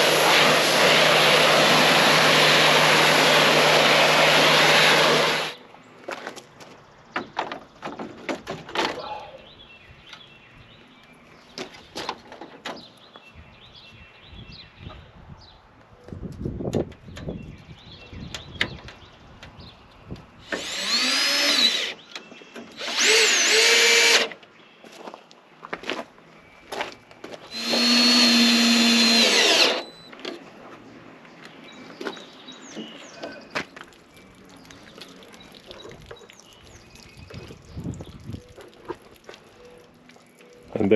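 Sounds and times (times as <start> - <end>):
power drill running: 0.0 - 5.6, 20.4 - 22.0, 22.8 - 24.4, 27.5 - 30.0
birds chirping faintly: 24.4 - 40.9.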